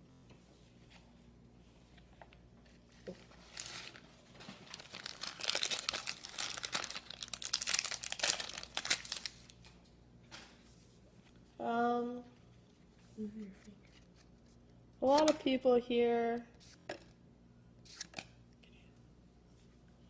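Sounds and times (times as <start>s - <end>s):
wrapper tearing and crinkling: 3.4s - 4.0s, 4.6s - 9.5s.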